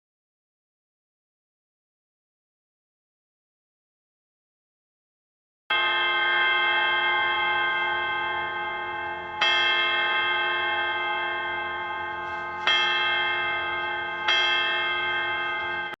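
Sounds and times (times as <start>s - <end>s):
bell striking the hour: 5.7s - 16.0s.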